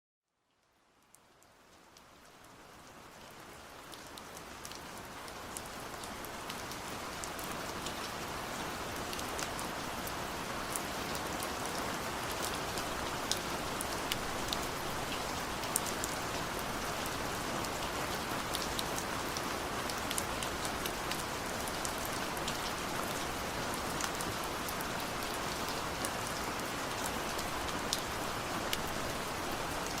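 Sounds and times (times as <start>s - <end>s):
raindrops ticking on a surface: 0.3s - 30.0s
steady rain hiss: 0.5s - 30.0s.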